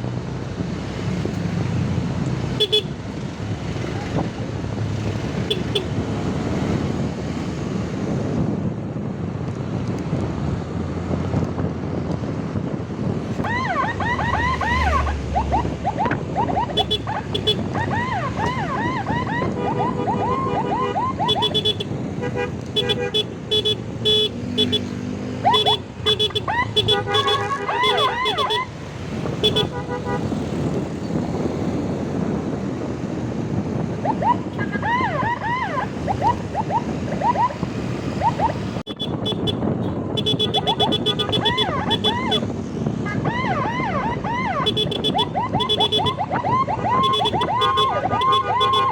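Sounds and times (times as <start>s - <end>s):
road and engine noise: 0.0s - 48.9s
wind noise on microphone: 0.0s - 48.9s
emergency siren yelping: 13.3s - 21.8s, 25.4s - 29.0s, 33.6s - 38.8s, 40.6s - 48.9s.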